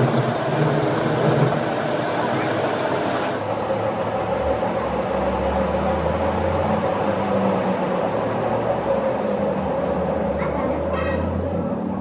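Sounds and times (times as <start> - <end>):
machine humming: 0.0 - 3.5.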